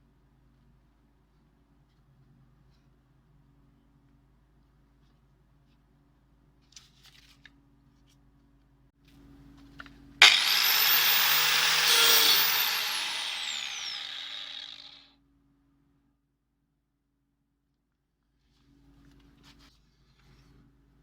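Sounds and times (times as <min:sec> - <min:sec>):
angle grinder whine: 0:10.2 - 0:15.0.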